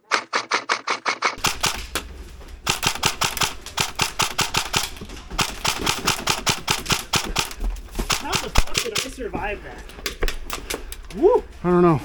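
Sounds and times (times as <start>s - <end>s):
rapid airsoft gunfire: 0.0s - 9.2s
low rumble: 1.4s - 5.7s.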